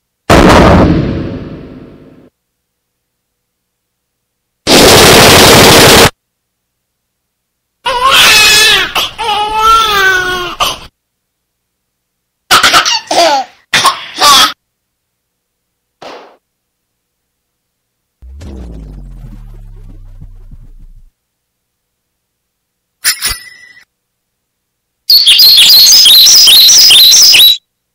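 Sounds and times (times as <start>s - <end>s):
loud even noise: 4.7s - 6.2s, 18.2s - 21.1s.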